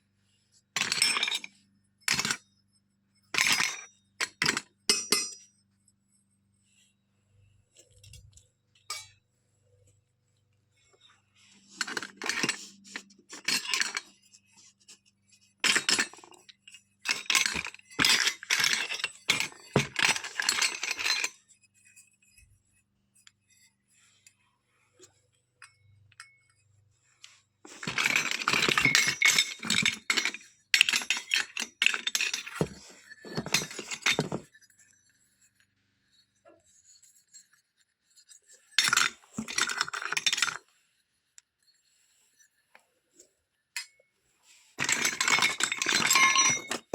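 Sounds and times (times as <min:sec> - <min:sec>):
toy dishes clinking and clattering: 0:00.8 - 0:02.4, 0:03.3 - 0:05.5, 0:07.9 - 0:09.2, 0:11.4 - 0:14.5, 0:15.6 - 0:21.6, 0:27.3 - 0:34.6, 0:38.6 - 0:40.7, 0:44.8 - 0:46.9.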